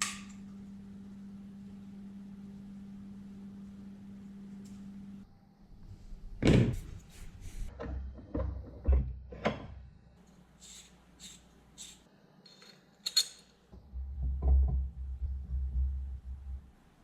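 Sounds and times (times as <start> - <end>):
steady low hum: 0.0 - 7.7.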